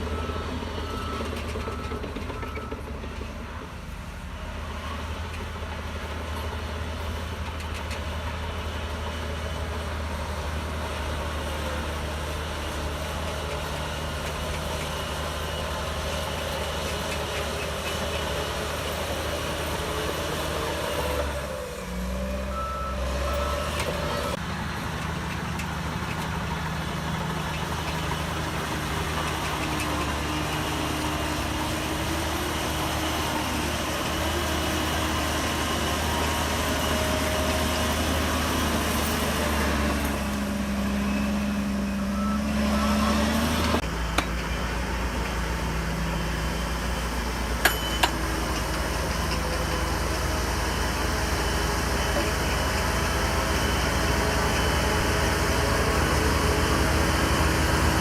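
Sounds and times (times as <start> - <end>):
bulldozer diesel engine running: 0.0 - 58.0
reversing alarm beeps: 22.5 - 24.4, 40.8 - 43.5.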